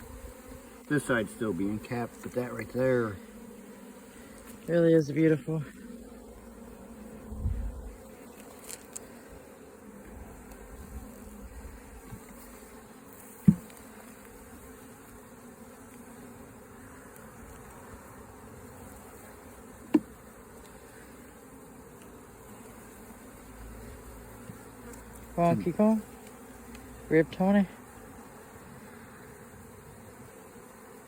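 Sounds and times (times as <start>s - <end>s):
honey bees buzzing: 0.0s - 31.0s
sharp knocks: 13.4s - 13.7s.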